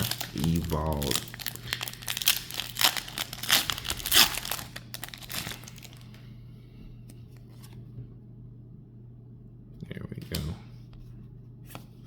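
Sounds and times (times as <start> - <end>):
foil wrapper tearing and crinkling: 0.0 - 6.1.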